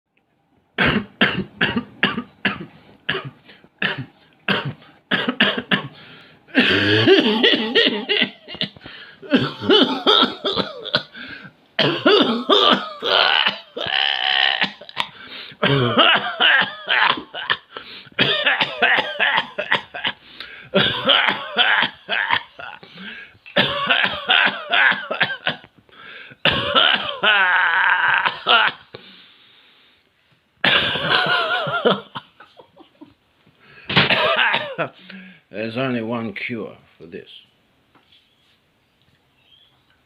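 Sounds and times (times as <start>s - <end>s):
person coughing hard: 0.8s - 11.2s, 11.8s - 25.7s, 26.4s - 28.9s, 30.6s - 32.4s, 33.9s - 35.0s.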